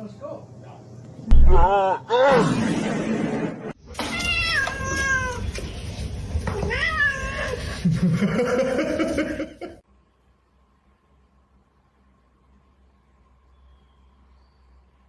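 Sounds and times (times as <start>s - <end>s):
cat meowing: 4.0s - 5.5s, 6.6s - 7.6s.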